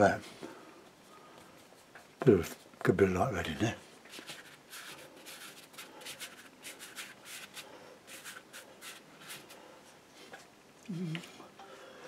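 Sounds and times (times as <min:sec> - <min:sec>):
paintbrush scrubbing on paper: 0:04.1 - 0:09.7.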